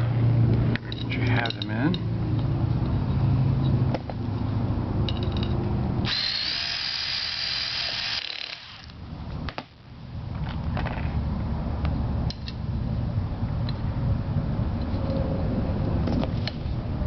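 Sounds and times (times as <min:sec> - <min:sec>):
power driver whirring: 0:06.0 - 0:09.0.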